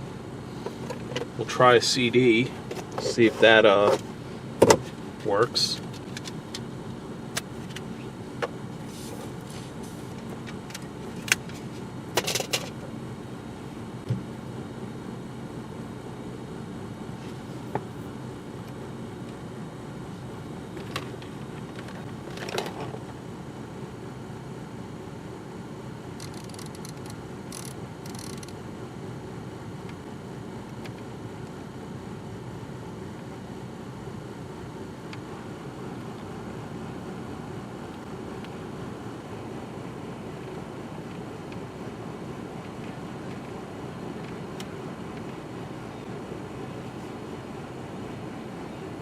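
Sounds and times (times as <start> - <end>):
low hum in car cabin: 0.0 - 49.0
cd clicking and rattling: 26.2 - 28.6.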